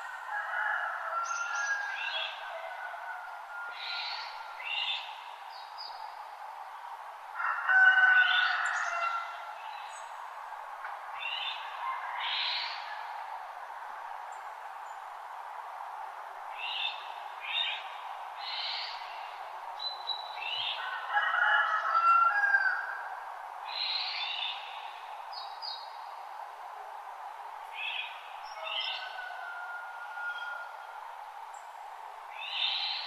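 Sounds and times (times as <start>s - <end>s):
songbirds chirping: 23.7s - 33.0s.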